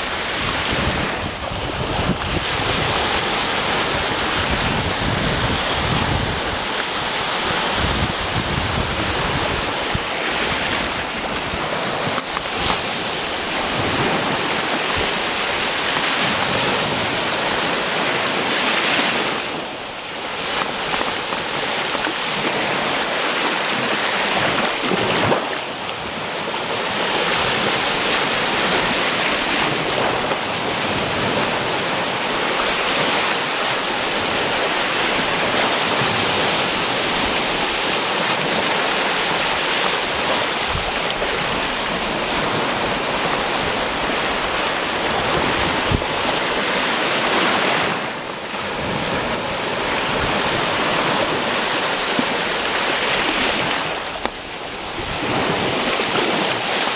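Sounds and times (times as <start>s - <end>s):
sea waves washing onto beach: 0.0s - 56.9s.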